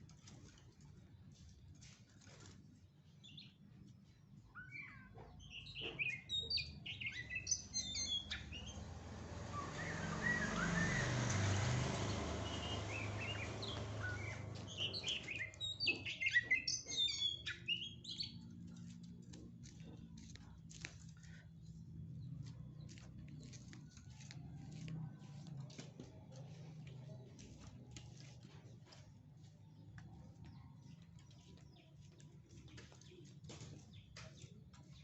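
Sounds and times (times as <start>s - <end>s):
bird chirping and calling: 4.4s - 19.0s.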